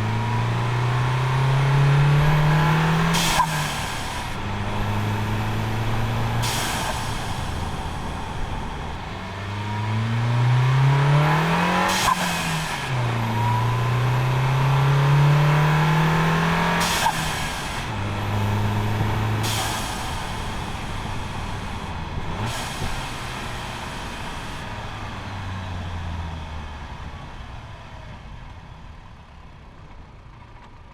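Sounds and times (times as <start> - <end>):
turbocharged engine revving: 0.0 - 27.1.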